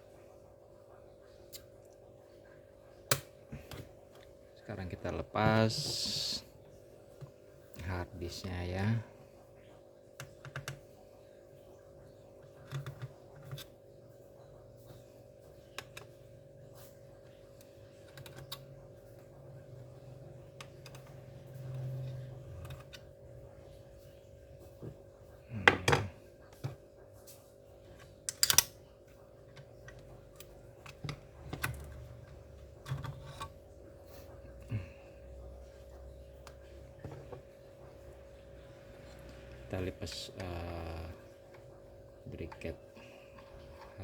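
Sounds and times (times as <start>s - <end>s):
faint steady hum: 0.0s - 44.0s
small parts clicking and tapping: 10.2s - 10.8s, 12.6s - 13.7s, 17.2s - 18.7s, 27.9s - 28.8s.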